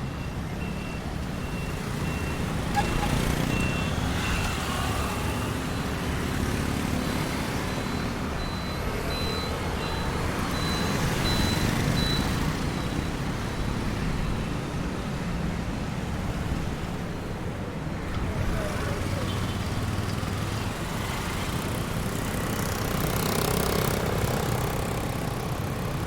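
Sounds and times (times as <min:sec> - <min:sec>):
road traffic rumble: 0:00.0 - 0:26.0
faint high beeping: 0:07.6 - 0:13.8.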